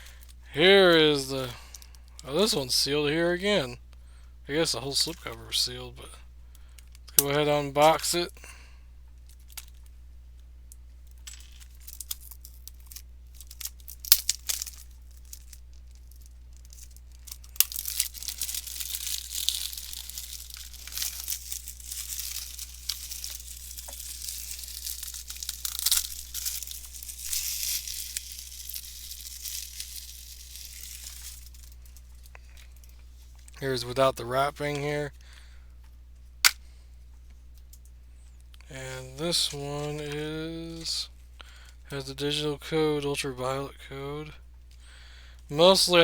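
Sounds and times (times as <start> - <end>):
plastic wrap crinkling and tearing: 11.3 - 33.6.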